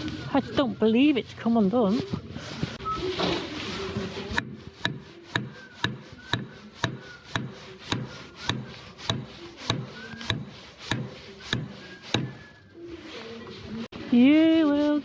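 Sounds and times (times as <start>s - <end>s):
hammer blows on metal: 4.3s - 12.7s.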